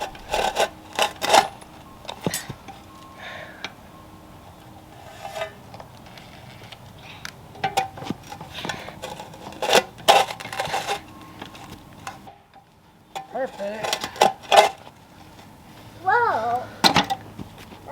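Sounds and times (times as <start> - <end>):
hard objects clinking and knocking: 0.0 - 3.8, 4.6 - 15.0.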